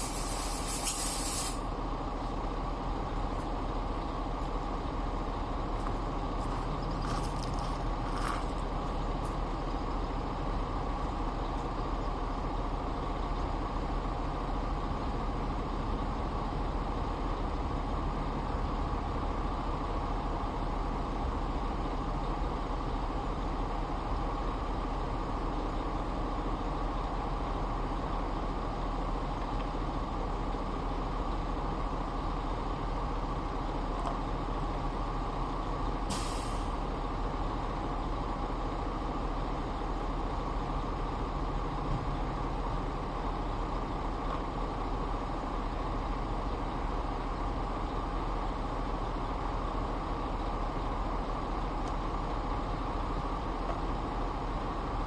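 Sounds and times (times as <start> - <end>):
short hiss: 0.0 - 1.7, 36.1 - 36.8.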